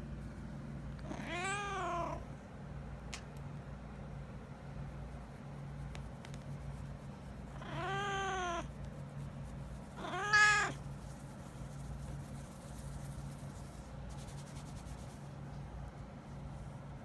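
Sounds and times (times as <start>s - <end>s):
cat meowing while yawning: 7.6s - 8.7s, 10.0s - 10.8s.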